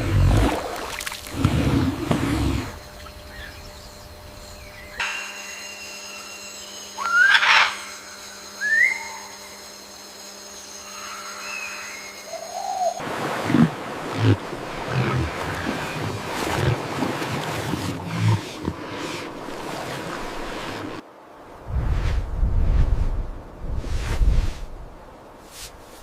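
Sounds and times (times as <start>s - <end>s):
rising whistled animal calls: 7.0s - 7.9s, 8.6s - 9.3s.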